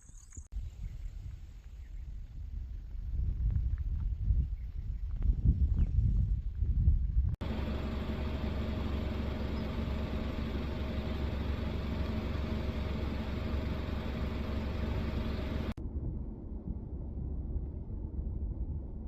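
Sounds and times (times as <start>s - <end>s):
low rumbling noise: 6.4s - 19.0s
engine droning steadily: 7.4s - 19.0s.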